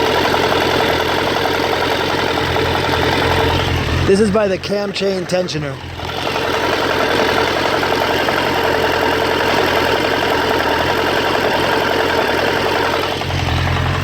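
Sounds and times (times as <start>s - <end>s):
motorcycle engine idling: 0.0s - 14.0s
rapid mechanical knocking: 0.0s - 14.0s.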